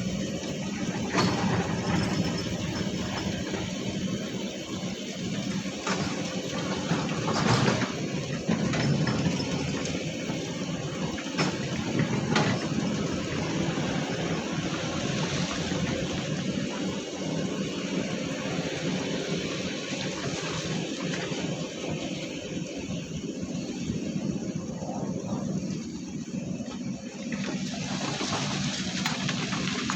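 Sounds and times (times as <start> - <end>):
heavy diesel machinery droning: 0.0 - 29.9.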